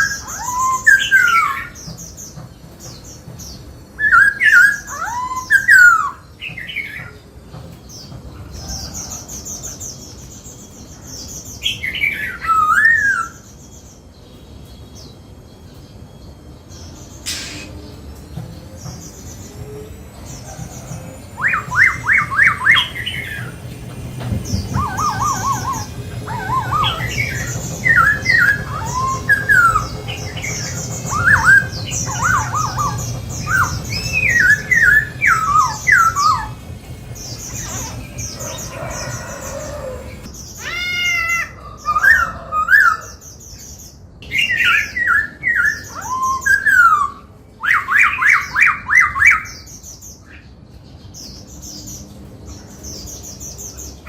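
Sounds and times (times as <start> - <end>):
bird singing whistles and trills: 0.0 - 7.2, 11.3 - 40.3, 44.2 - 50.5.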